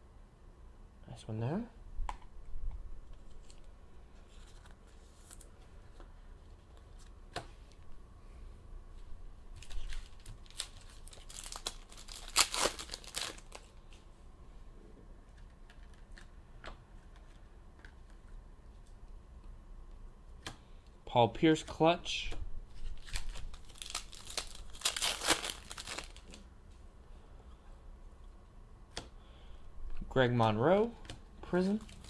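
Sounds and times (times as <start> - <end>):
wrapper tearing and crinkling: 9.6 - 13.8, 22.7 - 26.4, 31.6 - 32.0.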